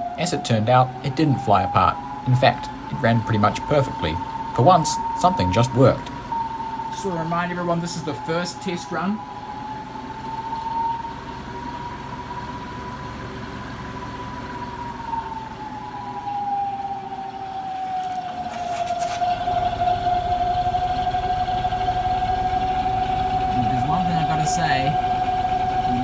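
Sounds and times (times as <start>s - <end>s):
electric motor high whine: 0.0s - 26.0s
low rumble: 17.2s - 26.0s.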